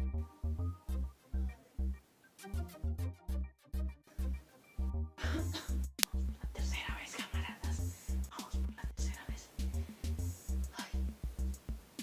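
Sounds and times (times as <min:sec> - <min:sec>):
music with heavy bass beat: 0:07.6 - 0:12.0.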